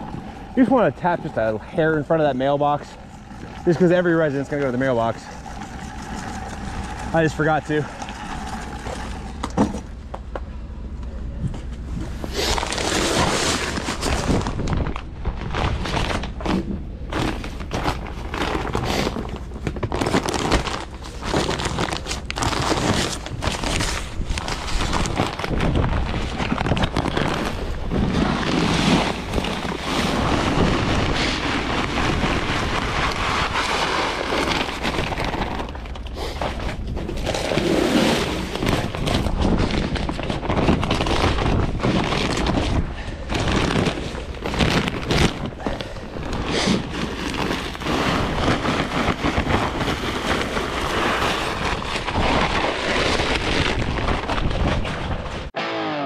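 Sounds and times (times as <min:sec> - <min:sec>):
wind buffeting microphone: 0:13.7 - 0:16.4, 0:23.2 - 0:34.2.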